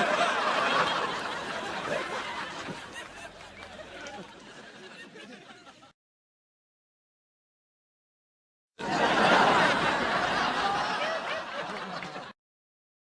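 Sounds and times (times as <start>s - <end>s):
audience laughter: 0.0s - 6.0s, 8.8s - 12.4s.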